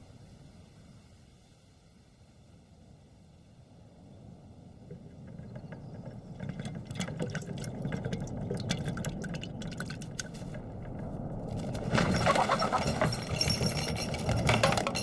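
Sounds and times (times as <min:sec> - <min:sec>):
small clicks and rattles: 0:04.8 - 0:15.0.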